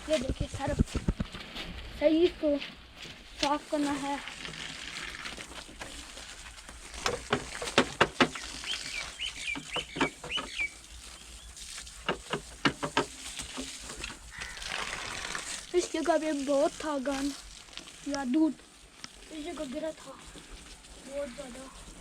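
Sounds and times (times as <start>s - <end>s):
small bird chirping: 8.3s - 11.6s.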